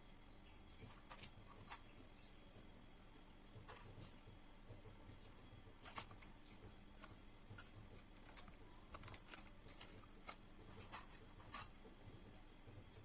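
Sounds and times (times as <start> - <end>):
small clicks and taps: 3.5 - 13.0.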